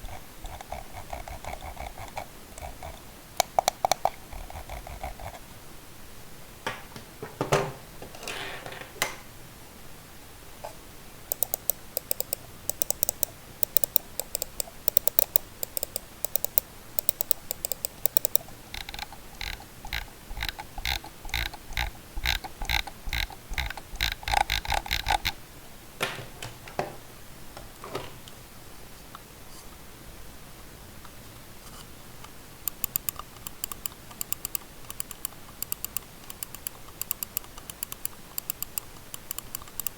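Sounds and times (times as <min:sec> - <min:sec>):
computer mouse clicking: 0:00.0 - 0:05.4, 0:11.3 - 0:25.4, 0:32.6 - 0:39.9.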